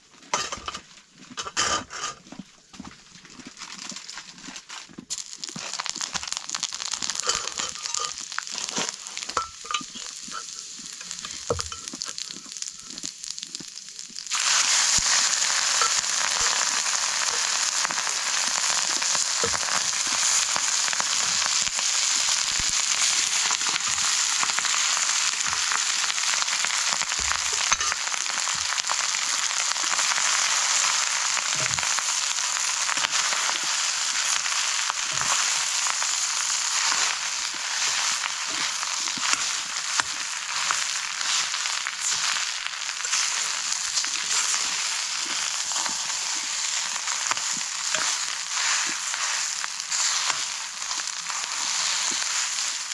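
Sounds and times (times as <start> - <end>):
rice sizzling in hot oil: 0.0 - 2.2, 3.5 - 52.9
crackles and clicks: 0.0 - 52.9.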